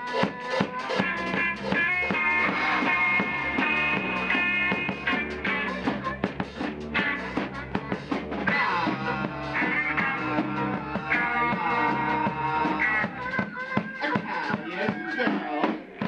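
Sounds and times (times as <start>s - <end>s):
rock band playing: 0.0s - 16.0s
bent guitar notes: 0.9s - 16.0s.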